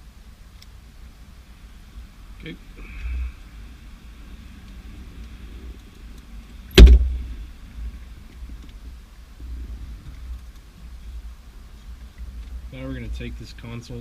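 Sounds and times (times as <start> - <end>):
low rumble: 1.8 - 13.6
sharp knock: 6.8 - 7.2.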